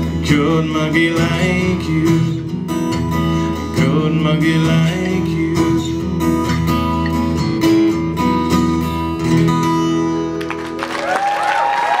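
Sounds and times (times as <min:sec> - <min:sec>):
acoustic guitar strumming: 0:00.0 - 0:10.8
audience cheering and whistling: 0:10.8 - 0:12.0.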